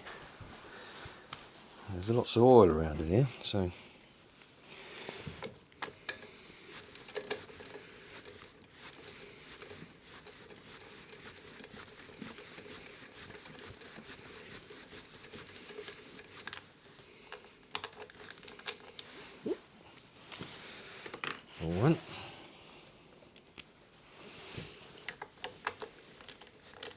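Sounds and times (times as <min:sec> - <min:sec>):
hand tools clicking and scraping: 0:04.7 - 0:22.0, 0:24.2 - 0:26.9.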